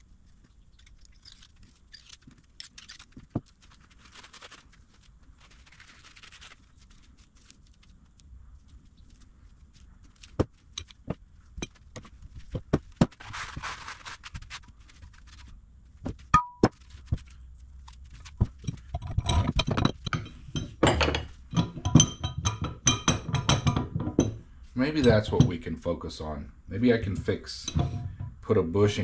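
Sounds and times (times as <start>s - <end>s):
metal parts clinking and knocking: 18.4s - 24.4s, 27.6s - 28.4s
metal scrape: 27.6s - 28.4s.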